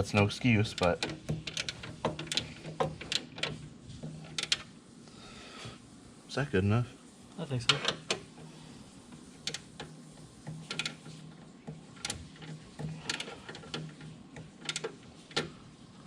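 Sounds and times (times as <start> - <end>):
hand tools clicking and tapping: 0.1 - 3.6.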